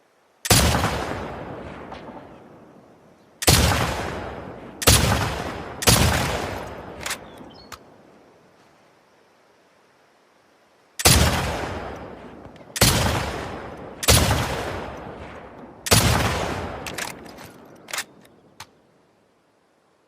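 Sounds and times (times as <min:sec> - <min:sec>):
rifle shots echoing: 0:00.4 - 0:02.8, 0:03.4 - 0:07.5, 0:11.0 - 0:18.2
sharp clicks: 0:05.8 - 0:07.8, 0:16.8 - 0:18.8.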